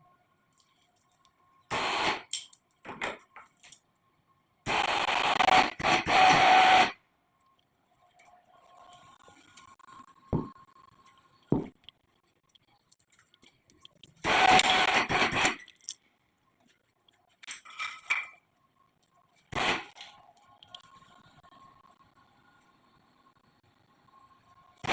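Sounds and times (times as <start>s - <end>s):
steel tools clanking and scraping: 2.3s - 3.8s.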